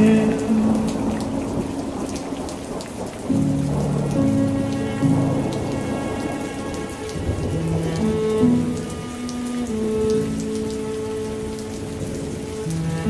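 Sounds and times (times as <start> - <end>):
raindrops ticking: 0.0 - 13.0
slow instrumental music: 0.0 - 13.0
steady rain falling: 0.0 - 13.0.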